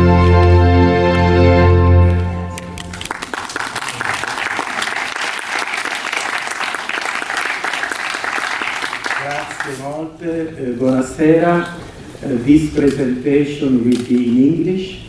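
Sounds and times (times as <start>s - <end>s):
organ-like music: 0.0s - 3.3s
audience applauding: 2.0s - 9.8s.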